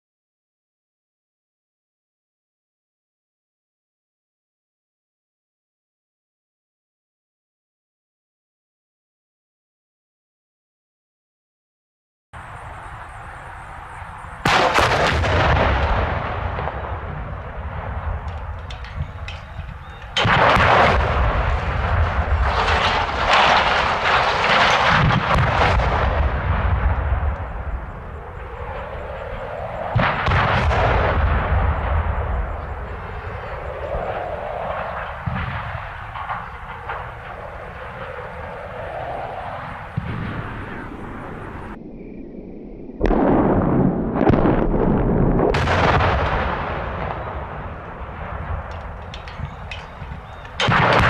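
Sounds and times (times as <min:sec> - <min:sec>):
explosive blasts: 0:12.4 - 0:41.8, 0:43.0 - 0:51.0
long rolling rumble: 0:12.4 - 0:41.8.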